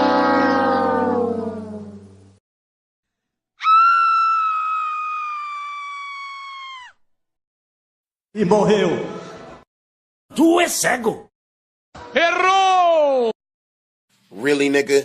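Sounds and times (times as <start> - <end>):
high-pitched scream: 0.0 - 2.1, 3.6 - 7.0.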